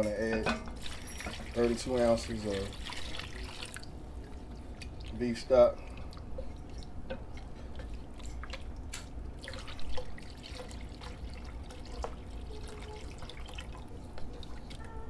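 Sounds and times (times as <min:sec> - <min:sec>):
liquid pouring and splashing: 0:00.8 - 0:15.0.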